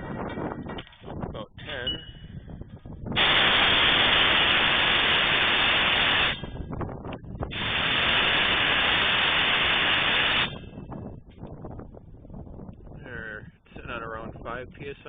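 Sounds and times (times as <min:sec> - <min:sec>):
compressed air hissing: 0:03.2 - 0:06.6, 0:07.5 - 0:10.7.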